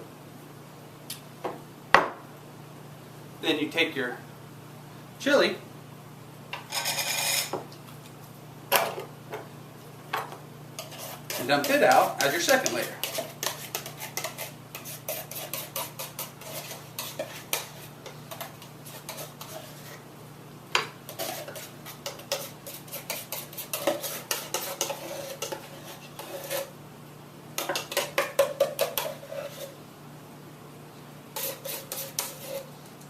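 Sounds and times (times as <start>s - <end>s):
metal utensil scraping and clinking: 6.6s - 7.5s.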